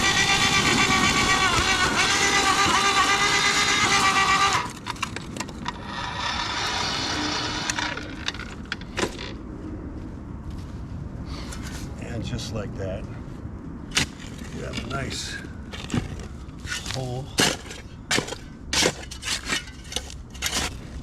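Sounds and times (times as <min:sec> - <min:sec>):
earth auger motor whine: 0:00.0 - 0:05.1, 0:05.7 - 0:09.3.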